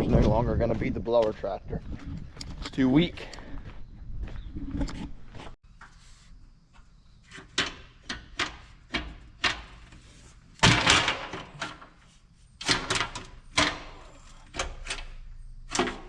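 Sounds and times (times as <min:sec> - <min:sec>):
metal clanks and knocks: 0:10.6 - 0:12.0.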